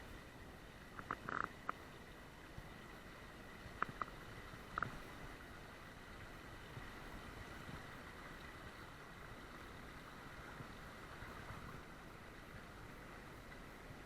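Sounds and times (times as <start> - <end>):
faint creek water running: 0.0 - 14.0.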